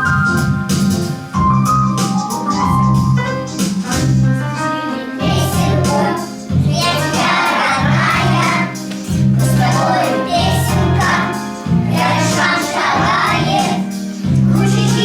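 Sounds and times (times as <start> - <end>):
instrumental backing track: 0.0 - 15.0
children singing: 4.6 - 15.0.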